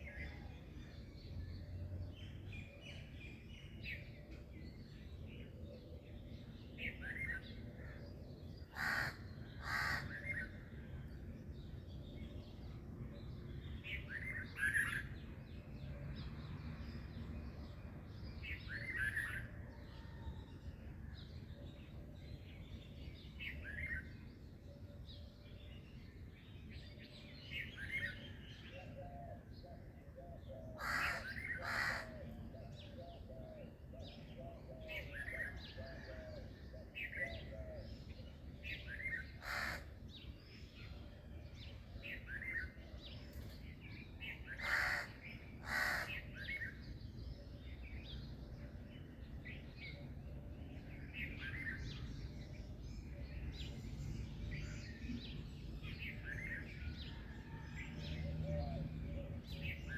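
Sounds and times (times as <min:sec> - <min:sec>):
loud harsh bird calls: 0:08.7 - 0:10.5, 0:30.8 - 0:32.3, 0:39.4 - 0:40.1, 0:44.4 - 0:46.7.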